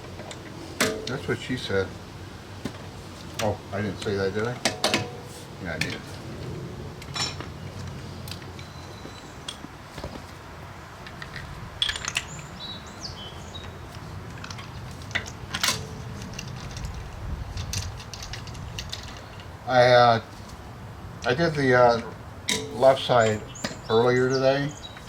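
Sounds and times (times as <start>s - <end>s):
metal tools clinking: 7.0s - 7.5s, 11.1s - 12.6s, 14.3s - 19.6s, 22.5s - 24.0s.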